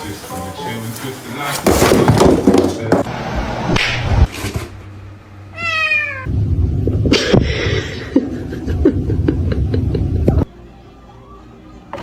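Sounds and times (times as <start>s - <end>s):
cat meowing: 5.5s - 6.3s
low noise: 6.3s - 11.9s.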